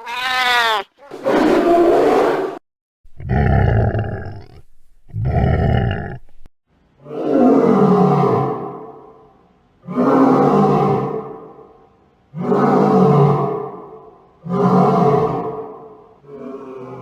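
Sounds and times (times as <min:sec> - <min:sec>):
lion roaring and grunting: 0:03.1 - 0:08.9, 0:09.9 - 0:11.4, 0:14.4 - 0:17.0.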